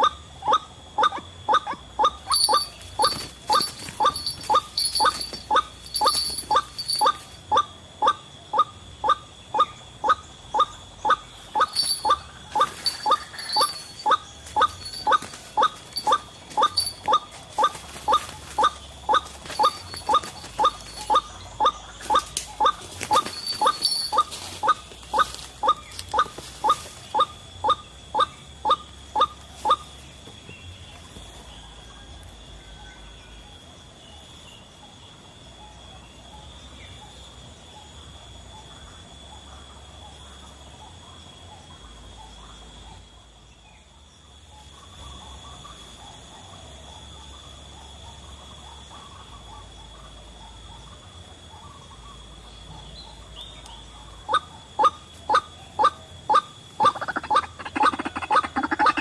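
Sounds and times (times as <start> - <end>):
waterhen harsh calls: 0.0 - 29.8, 54.3 - 59.0
faint outdoor ambience: 0.0 - 59.0
thin high insect-like tone: 0.0 - 59.0.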